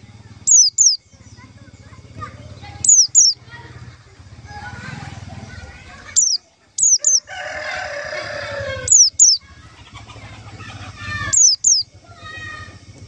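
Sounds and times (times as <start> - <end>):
bird high sharp calls: 0.0 - 12.9
rooster crowing: 6.2 - 12.7.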